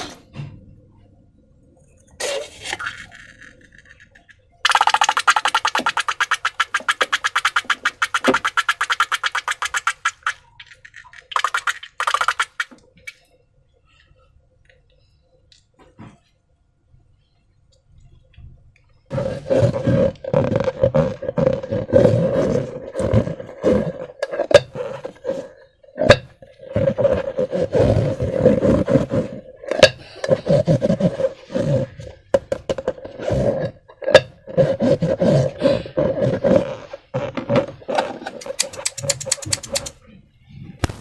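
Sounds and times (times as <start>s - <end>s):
slime squelching and scraping: 2.2s - 12.8s, 19.1s - 40.0s.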